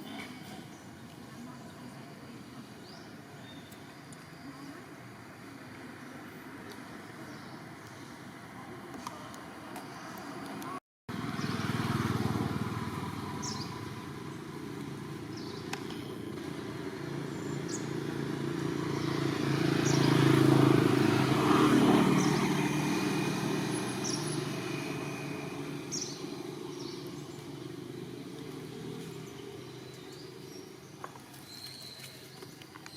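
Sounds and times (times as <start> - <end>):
vehicle engine passing by: 11.1 - 30.8.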